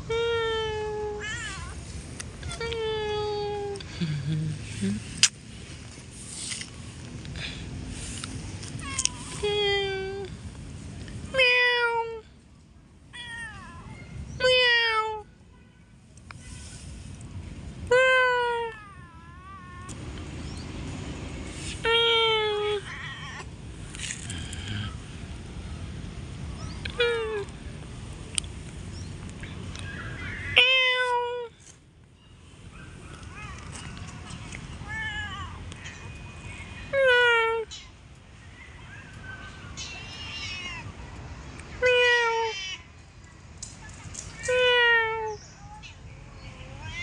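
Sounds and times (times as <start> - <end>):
cats meowing: 21.8 - 23.5, 33.2 - 37.8, 39.7 - 41.0, 44.4 - 47.0
cat meowing: 39.8 - 40.9.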